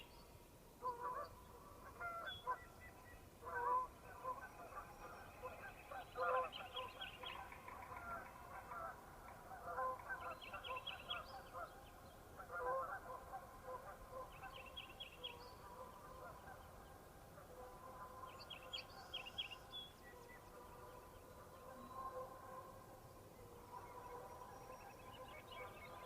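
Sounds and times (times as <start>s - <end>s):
geese honking: 3.4s - 4.8s, 8.0s - 10.3s, 12.4s - 14.2s.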